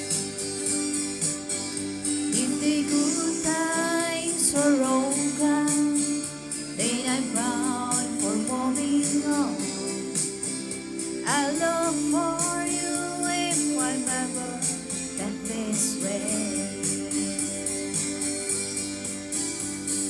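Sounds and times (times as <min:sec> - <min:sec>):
instrumental accompaniment: 0:00.0 - 0:20.0
woman singing: 0:02.3 - 0:10.5, 0:11.2 - 0:17.6.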